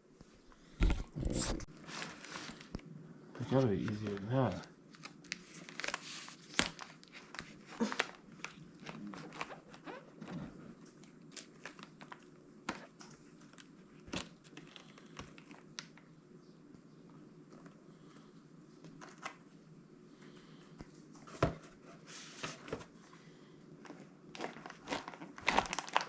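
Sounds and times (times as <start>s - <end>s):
hands crinkling and tearing: 3.9s - 10.1s, 24.4s - 26.0s.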